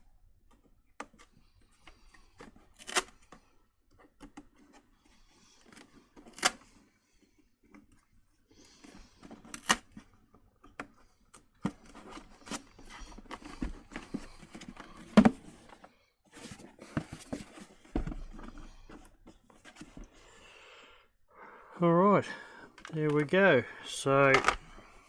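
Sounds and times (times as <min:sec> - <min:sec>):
plastic casing parts clicking: 0:22.6 - 0:23.4, 0:24.0 - 0:24.8.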